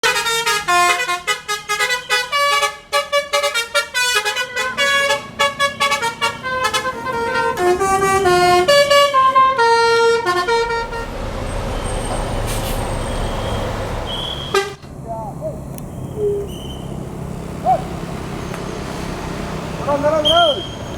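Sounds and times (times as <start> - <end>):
multi-tone bus horn tune: 0.0 - 14.9
bus engine rumble: 0.0 - 20.9
road noise: 0.0 - 20.9.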